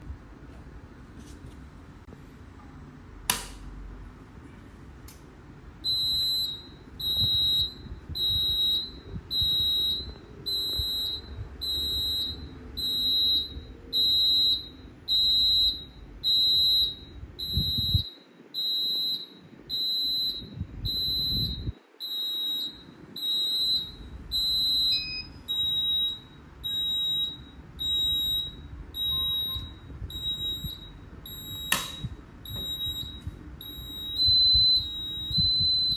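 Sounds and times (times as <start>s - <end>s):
sharp click: 3.3s - 3.7s, 31.7s - 32.1s
fire alarm high-pitched beeps: 5.8s - 35.9s.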